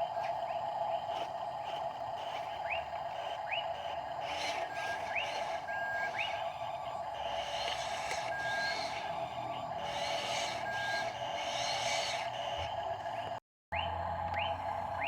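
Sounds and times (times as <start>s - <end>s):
steady hum: 0.0s - 15.0s
birds whistling chirps: 2.6s - 6.4s.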